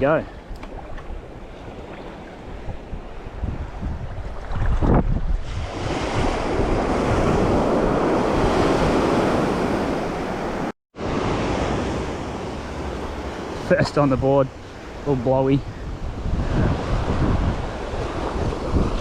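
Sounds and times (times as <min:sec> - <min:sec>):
wind buffeting microphone: 0:00.0 - 0:10.7, 0:15.6 - 0:19.0.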